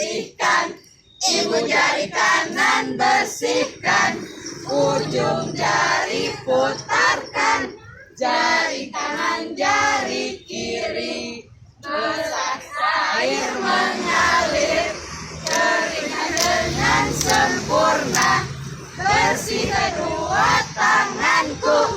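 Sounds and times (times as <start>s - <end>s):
voices singing: 0.0s - 21.9s.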